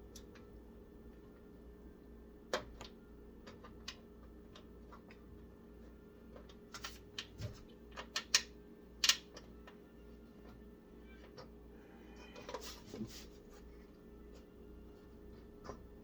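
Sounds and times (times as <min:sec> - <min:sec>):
faint steady hum: 0:00.0 - 0:16.0
small parts clicking and tapping: 0:02.5 - 0:05.5, 0:06.3 - 0:09.8.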